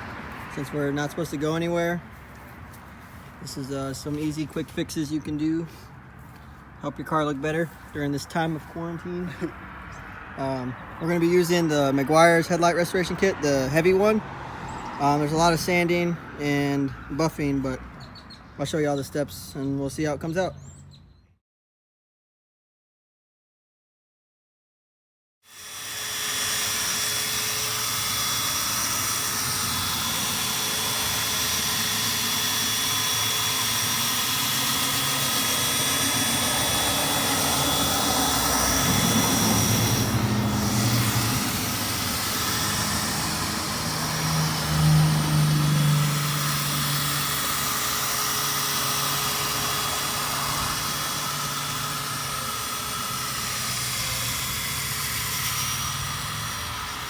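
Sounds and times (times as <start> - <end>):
electric drill motor whine: 25.5 - 57.0
sanding pad on plastic: 25.5 - 57.0.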